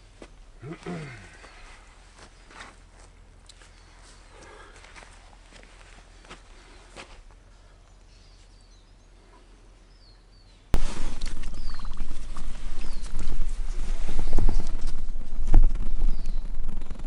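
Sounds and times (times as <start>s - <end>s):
bird chirps: 7.8s - 17.0s
close rustling: 10.8s - 17.0s.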